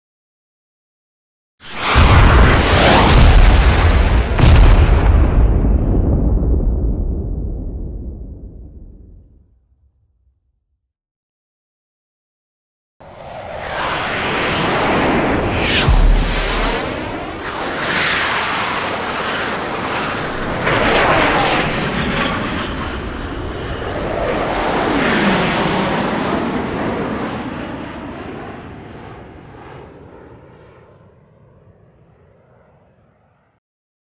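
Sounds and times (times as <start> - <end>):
aircraft flying past: 13.0 - 33.5.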